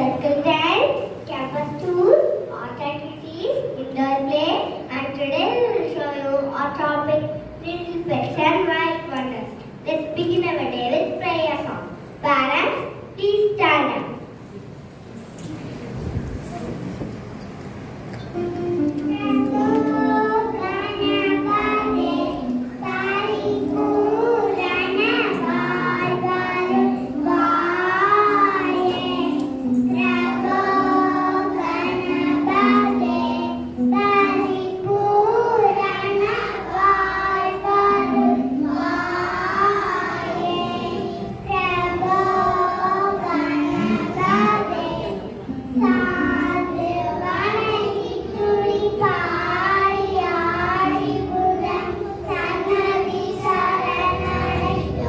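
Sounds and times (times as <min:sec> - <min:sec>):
music: 0:17.5 - 0:55.0
children singing: 0:18.8 - 0:55.0.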